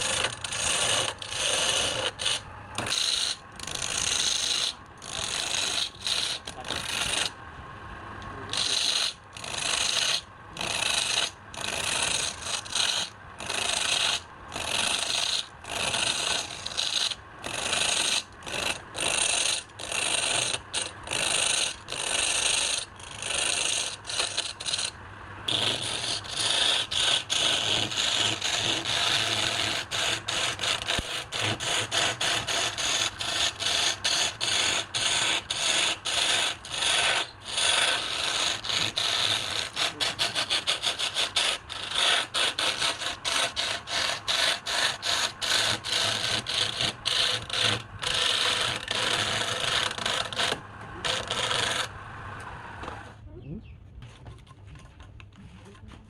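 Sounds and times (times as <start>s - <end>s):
hand tool scraping wood: 0.0s - 7.4s, 8.4s - 51.9s.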